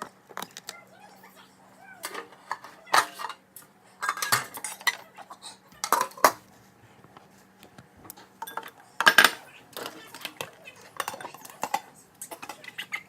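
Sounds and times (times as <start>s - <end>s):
dishes clinking in sink: 2.0s - 3.4s, 4.0s - 5.1s, 5.8s - 6.4s, 8.2s - 13.0s.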